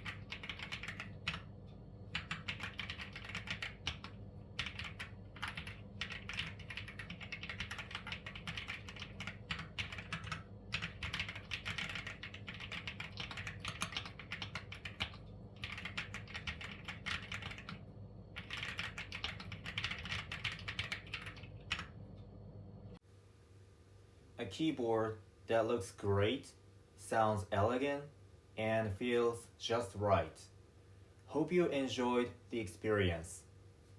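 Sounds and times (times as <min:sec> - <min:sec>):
mechanical keyboard typing: 0:00.0 - 0:01.5, 0:02.1 - 0:22.0.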